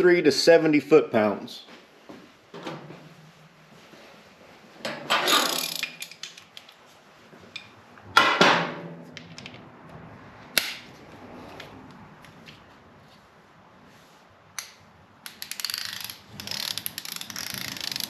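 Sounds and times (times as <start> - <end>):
metal tools clattering: 4.9 - 6.4.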